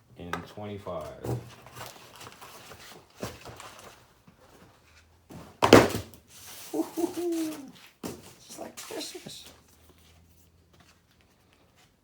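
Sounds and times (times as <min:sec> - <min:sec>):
packaging handled with knocks and clicks: 0:00.3 - 0:04.7.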